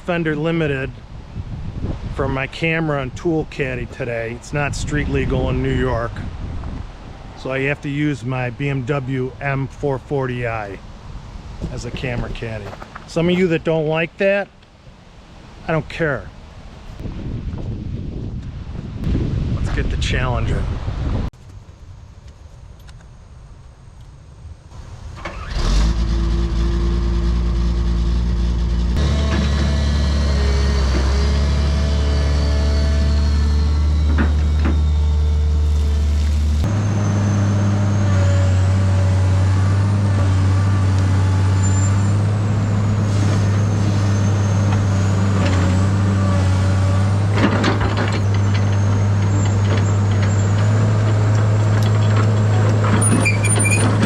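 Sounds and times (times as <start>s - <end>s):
excavator diesel engine: 24.7s - 54.0s.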